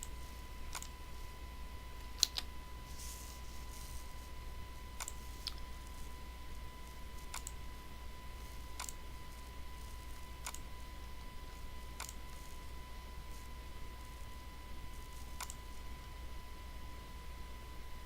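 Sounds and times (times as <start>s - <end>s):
computer mouse clicks: 0.0s - 1.0s, 2.1s - 4.0s, 4.9s - 7.6s, 8.4s - 10.7s, 12.0s - 12.7s, 15.1s - 16.2s
faint steady hum: 0.0s - 18.0s
thin high whine: 0.0s - 18.0s.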